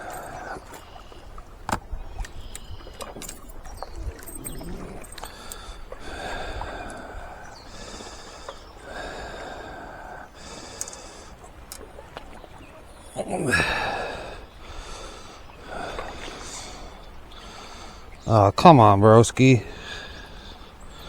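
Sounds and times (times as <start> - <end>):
person breathing heavily: 0.0 - 1.1, 4.4 - 11.4, 13.4 - 18.1, 19.6 - 21.0.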